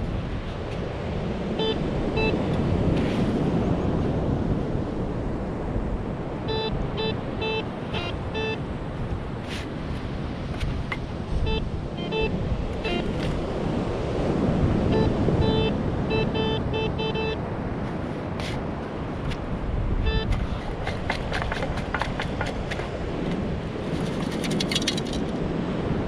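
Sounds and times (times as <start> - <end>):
wind noise: 0.0 - 26.0
metal detector beeping: 1.6 - 2.4, 6.5 - 8.6, 11.4 - 13.4, 14.9 - 17.4, 20.0 - 22.1.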